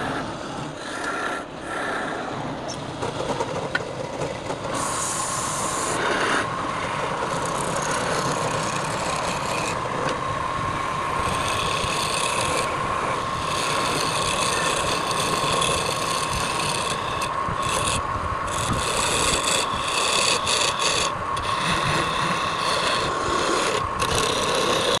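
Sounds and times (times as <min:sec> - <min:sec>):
hand tool scraping spinning wood: 0:00.0 - 0:02.2, 0:03.0 - 0:25.0
wood lathe whining: 0:04.7 - 0:25.0.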